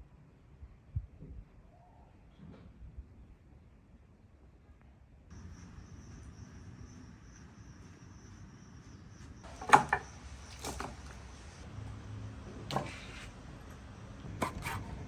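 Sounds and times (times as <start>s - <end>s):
insects chirring: 5.3s - 11.6s.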